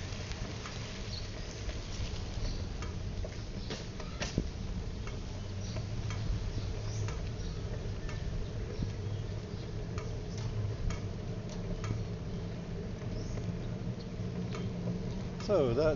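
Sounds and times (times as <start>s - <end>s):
steady low hum: 0.0s - 15.9s
light clicks and ticks: 5.0s - 9.0s, 9.9s - 12.1s, 13.0s - 15.9s.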